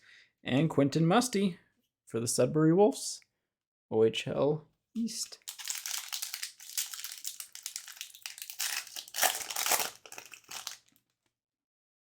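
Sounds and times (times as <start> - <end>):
card pack wrapper crinkling: 5.0 - 11.0.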